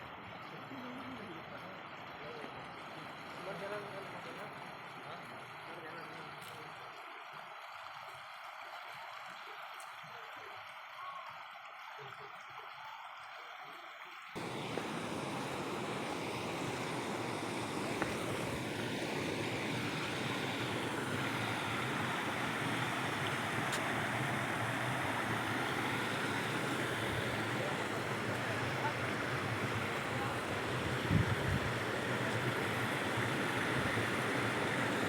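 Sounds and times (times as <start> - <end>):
waterfall rushing water: 14.4 - 35.0.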